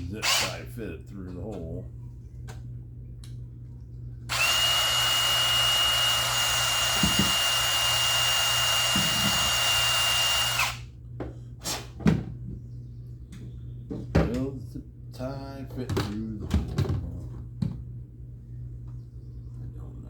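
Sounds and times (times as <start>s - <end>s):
power drill whining: 0.2s - 0.6s, 4.3s - 10.8s.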